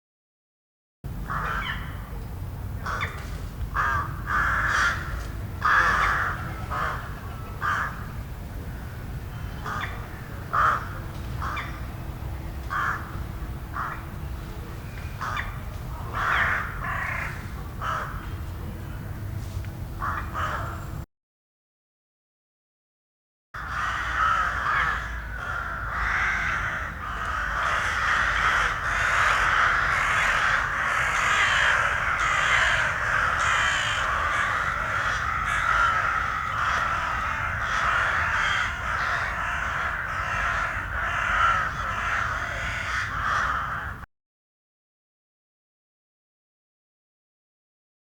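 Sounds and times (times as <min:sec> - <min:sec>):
crows cawing: 0:01.3 - 0:01.8, 0:02.8 - 0:08.1, 0:09.6 - 0:11.8, 0:12.7 - 0:14.1, 0:15.2 - 0:18.2, 0:20.0 - 0:20.8, 0:23.6 - 0:44.0.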